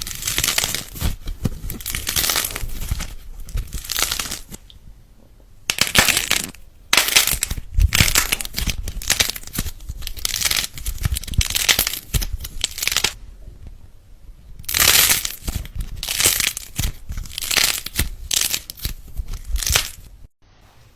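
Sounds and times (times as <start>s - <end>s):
slime crackling when squeezed: 5.7s - 13.2s, 14.7s - 20.1s.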